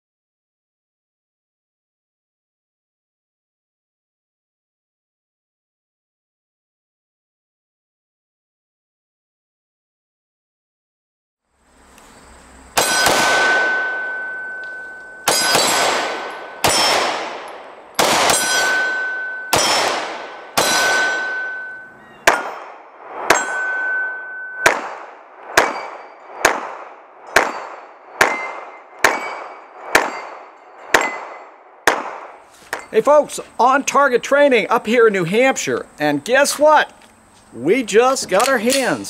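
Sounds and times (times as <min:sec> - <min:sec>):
bullets clanging on steel targets: 0:12.8 - 0:22.6, 0:23.3 - 0:25.0, 0:25.6 - 0:26.7, 0:27.3 - 0:33.0, 0:38.2 - 0:39.0.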